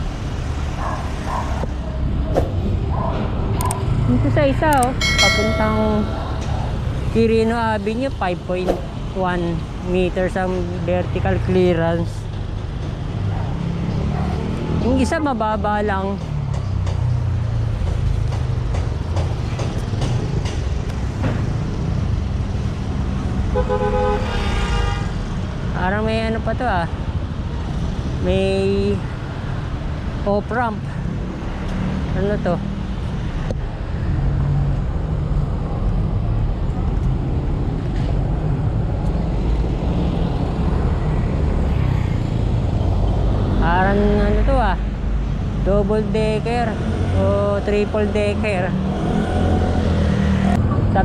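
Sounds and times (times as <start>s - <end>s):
road traffic rumble: 0.0s - 51.0s
vehicle horn: 23.5s - 25.2s.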